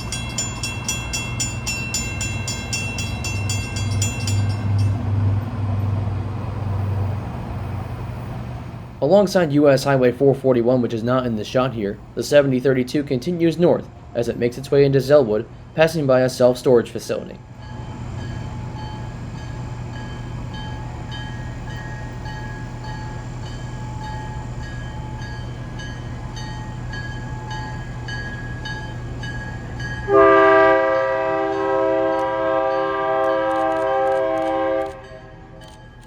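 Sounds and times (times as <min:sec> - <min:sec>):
locomotive engine rumble: 0:00.0 - 0:36.0
locomotive air horn chord: 0:30.1 - 0:35.6.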